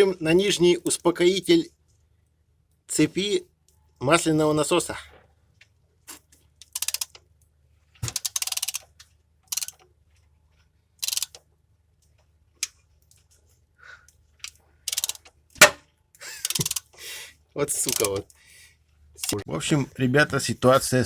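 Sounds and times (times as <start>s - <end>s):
ratchet wrench clicking: 6.6s - 7.2s, 8.0s - 8.9s, 9.5s - 9.8s, 11.0s - 11.4s, 14.4s - 15.3s, 16.3s - 17.0s, 17.8s - 18.3s
sharp knock: 15.6s - 15.8s.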